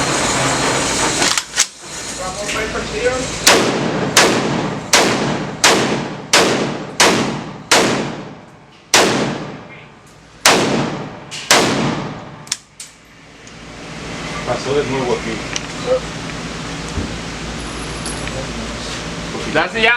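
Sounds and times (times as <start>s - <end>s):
gunshots with echo: 3.5s - 9.6s, 10.4s - 12.2s.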